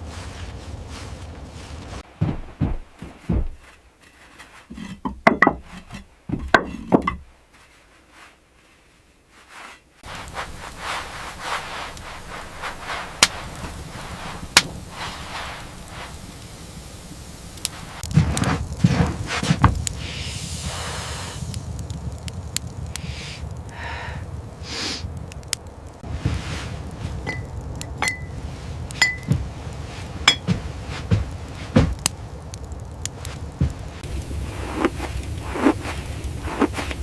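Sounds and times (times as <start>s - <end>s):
steady low rumble: 0.0s - 3.8s, 10.0s - 37.0s.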